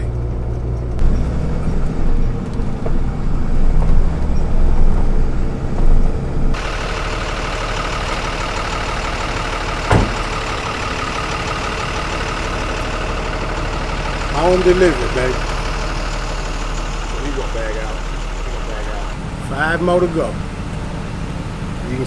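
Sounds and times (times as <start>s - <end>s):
truck engine and road noise: 0.0s - 22.0s
knock: 9.9s - 10.3s.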